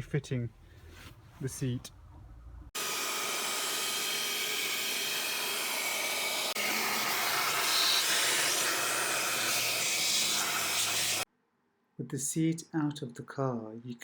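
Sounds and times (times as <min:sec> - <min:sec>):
loud rush of air from cleaning tool: 0:02.8 - 0:11.2.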